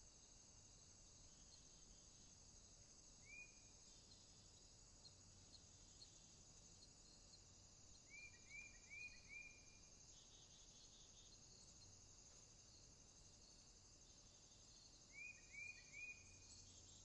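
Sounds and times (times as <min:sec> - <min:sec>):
insects chirring: 0:00.0 - 0:17.0
bird chirps: 0:08.0 - 0:11.7, 0:15.1 - 0:17.0.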